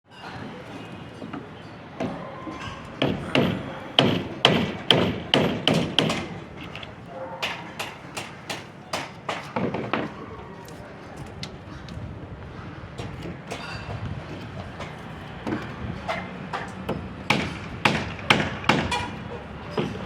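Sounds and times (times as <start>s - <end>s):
hand tool striking hard material: 3.0s - 6.8s.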